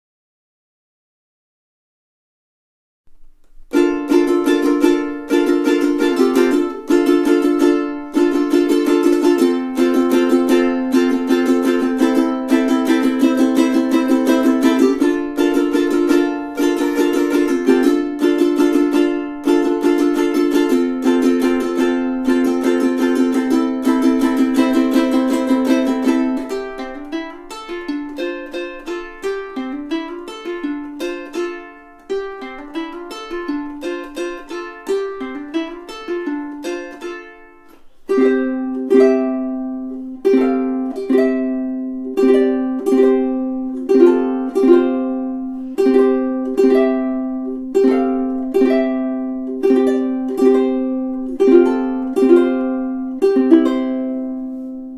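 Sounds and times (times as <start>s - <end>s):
ukulele picked single notes: 3.1s - 54.9s
ukulele strummed chords: 3.1s - 54.9s.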